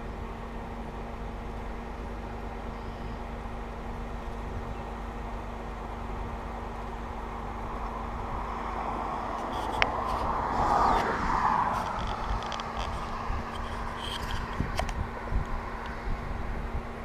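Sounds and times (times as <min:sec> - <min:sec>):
vehicle and road noise: 0:00.0 - 0:17.0
vehicle passing: 0:06.6 - 0:16.6.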